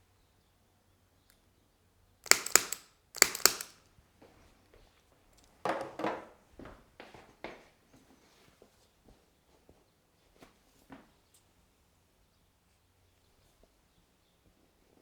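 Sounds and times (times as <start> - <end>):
sharp clicks of activator instrument: 2.2 - 3.8.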